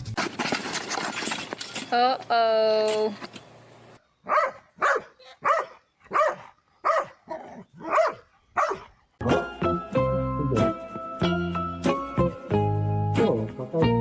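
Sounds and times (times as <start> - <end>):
dog barking: 4.2 - 8.9
background music: 9.2 - 14.0.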